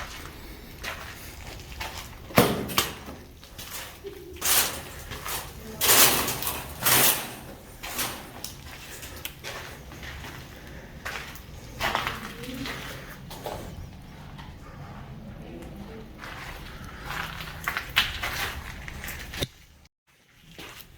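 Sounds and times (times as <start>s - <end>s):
scraping noises: 3.0s - 19.7s.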